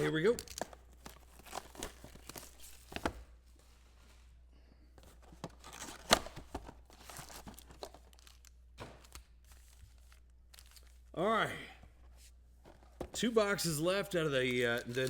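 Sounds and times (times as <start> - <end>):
wrappers tearing and crinkling: 0.0 - 2.8, 7.0 - 11.1, 14.4 - 15.0.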